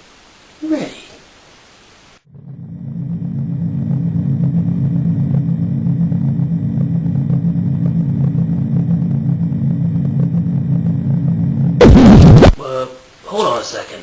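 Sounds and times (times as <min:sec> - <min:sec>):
loud low fluttering drone: 0:02.3 - 0:12.6.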